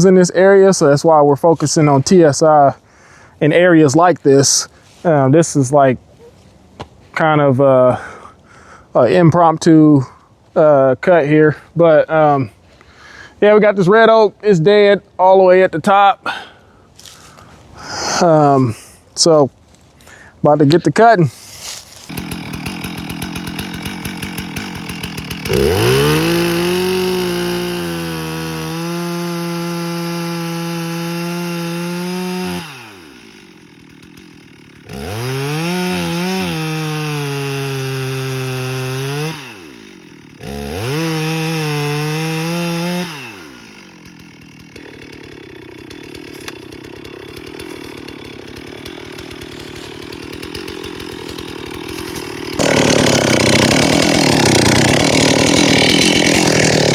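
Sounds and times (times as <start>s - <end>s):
chainsaw cutting wood: 21.4s - 56.9s.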